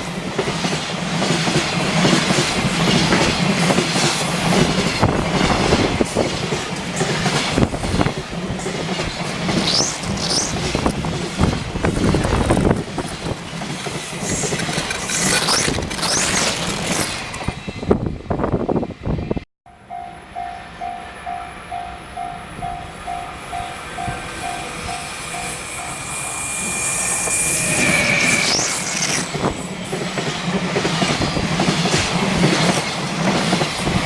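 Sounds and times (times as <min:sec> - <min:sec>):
train wheels clattering and squealing: 0:00.0 - 0:18.7, 0:21.4 - 0:34.0
approaching train: 0:00.0 - 0:34.0
level crossing warning bell: 0:19.7 - 0:28.4.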